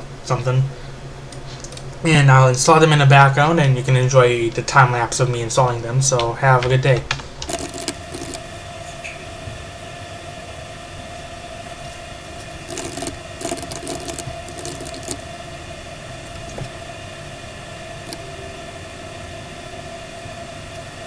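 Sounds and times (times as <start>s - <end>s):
mechanical hum with whining tones: 0.0s - 21.0s
rustling and clicks: 5.6s - 9.1s, 11.7s - 15.4s, 18.0s - 18.4s.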